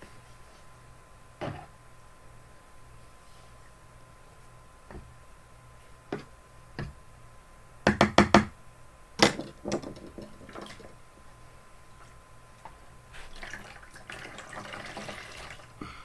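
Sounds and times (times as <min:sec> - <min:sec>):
sharp knocks: 0:07.9 - 0:08.5.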